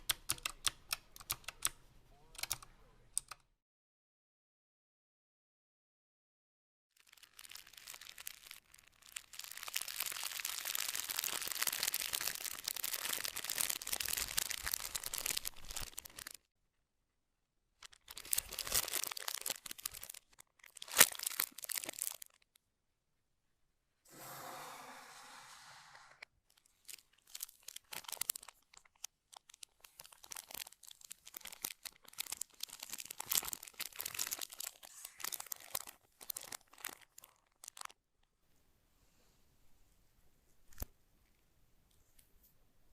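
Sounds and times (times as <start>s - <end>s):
packaging crinkling and tearing: 7.0s - 16.5s, 17.8s - 22.6s, 26.5s - 38.0s.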